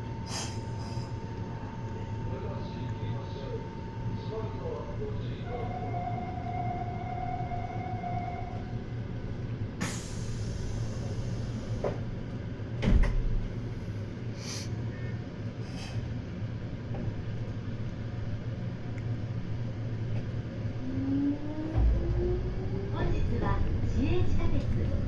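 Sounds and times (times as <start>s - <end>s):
electric train equipment humming: 0.0s - 14.3s, 16.5s - 25.0s
train clunks and thuds: 11.7s - 12.1s, 12.8s - 13.6s, 21.7s - 25.0s.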